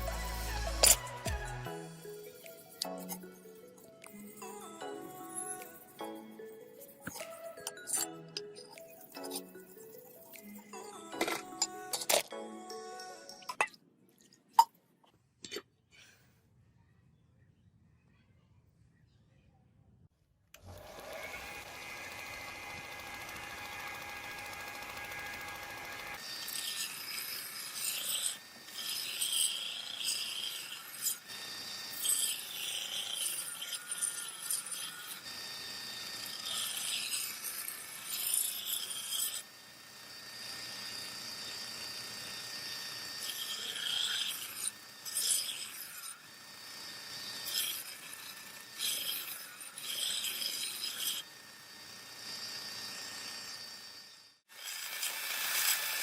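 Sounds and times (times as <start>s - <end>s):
scraping rusted steel blade: 0.0s - 3.8s, 26.2s - 35.3s, 36.2s - 39.5s, 40.9s - 46.2s, 46.8s - 51.3s.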